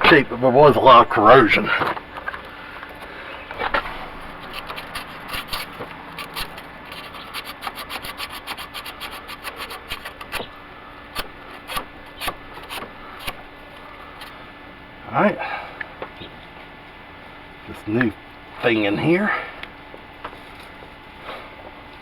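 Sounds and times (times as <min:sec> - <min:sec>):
battery terminal being scrubbed: 0:02.9 - 0:13.6.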